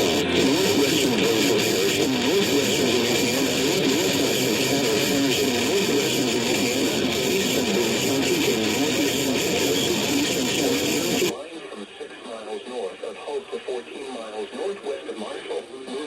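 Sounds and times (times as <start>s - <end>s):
guitar music over radio: 0.0s - 11.8s.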